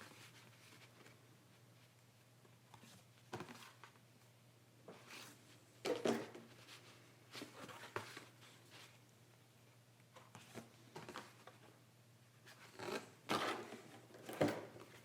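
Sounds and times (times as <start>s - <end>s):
faint steady hum: 0.0s - 15.0s
paper and cardboard rustling: 5.0s - 9.0s.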